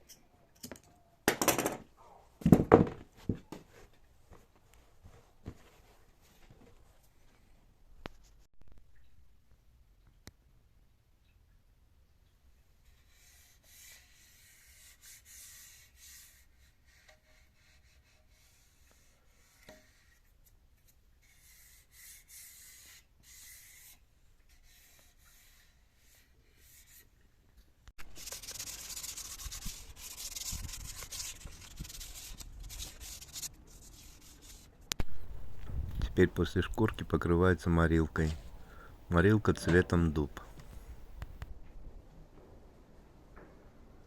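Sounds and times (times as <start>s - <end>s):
sandpaper rubbing on wood: 13.1s - 19.5s, 28.1s - 34.7s.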